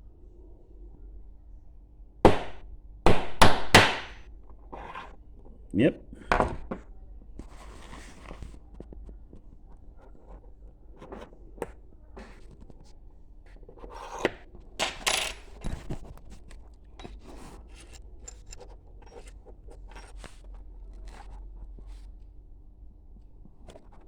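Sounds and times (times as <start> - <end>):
metal tools clinking and scraping: 14.8 - 16.0, 17.0 - 20.2.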